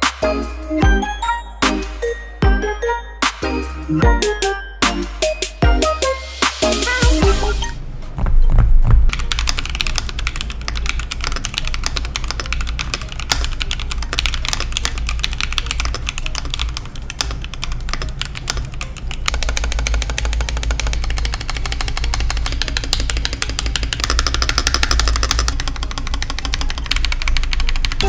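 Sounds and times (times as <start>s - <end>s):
steady low hum: 0.0s - 28.0s
mechanical keyboard typing: 9.1s - 28.0s.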